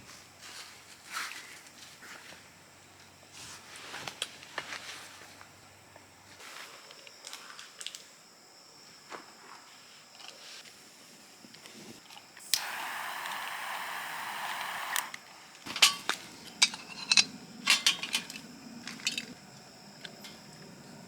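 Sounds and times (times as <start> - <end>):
steady hiss: 11.8 - 16.6
metal utensils clinking: 15.7 - 18.4.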